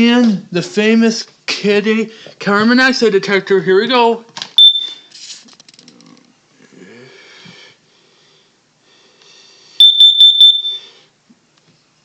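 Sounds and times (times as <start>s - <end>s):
high-pitched alarm beeps: 4.6s - 5.1s, 9.8s - 11.0s.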